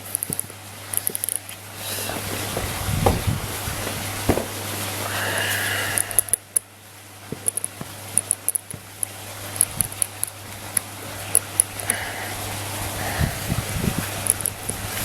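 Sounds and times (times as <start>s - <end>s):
steady low hum: 0.0s - 15.0s
small metal parts clicking: 7.4s - 10.4s, 14.2s - 14.6s.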